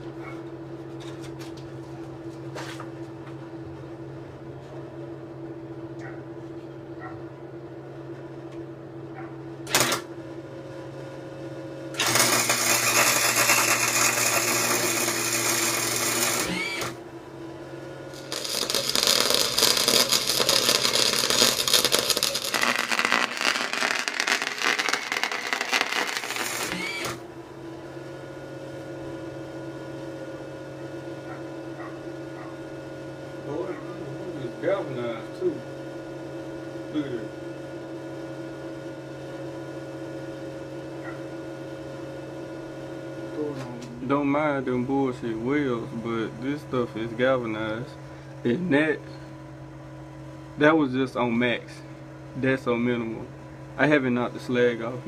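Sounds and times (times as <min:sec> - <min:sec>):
steady hum: 0:01.9 - 0:38.2
welding arc crackling: 0:09.7 - 0:10.1, 0:12.0 - 0:17.0, 0:18.1 - 0:27.2.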